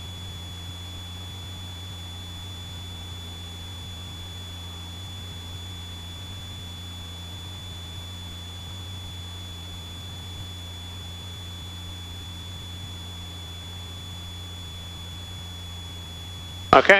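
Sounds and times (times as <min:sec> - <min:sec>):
high-pitched whine: 0:00.0 - 0:16.9
propeller plane engine drone: 0:00.0 - 0:16.9.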